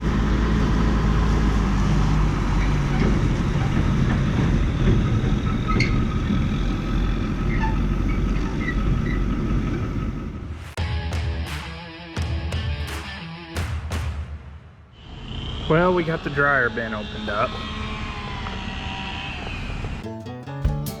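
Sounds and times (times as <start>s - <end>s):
heavy farm machinery engine running: 0.0s - 10.5s.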